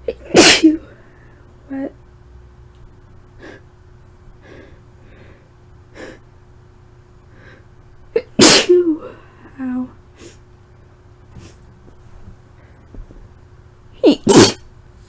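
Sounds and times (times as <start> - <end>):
woman sneezing: 0.1 - 0.9, 8.2 - 9.2, 14.0 - 14.6.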